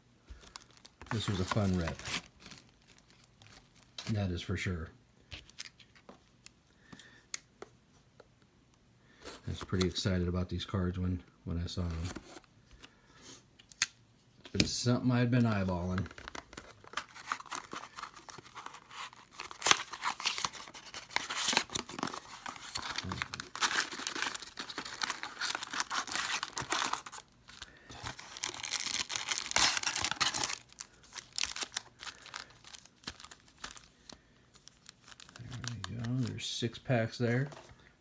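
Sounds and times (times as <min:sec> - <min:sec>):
packaging torn open and crinkled: 0:00.4 - 0:04.2, 0:15.5 - 0:36.5.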